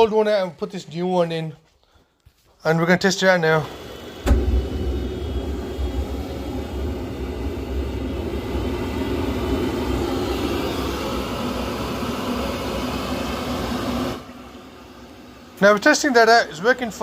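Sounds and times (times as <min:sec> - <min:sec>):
gas boiler rumbling: 0:03.4 - 0:17.0.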